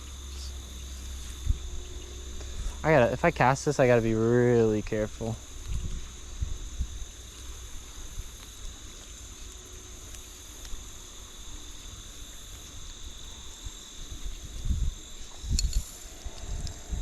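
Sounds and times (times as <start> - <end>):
insects chirring: 0.0 - 17.0
low rumble: 0.6 - 7.1, 14.4 - 17.0.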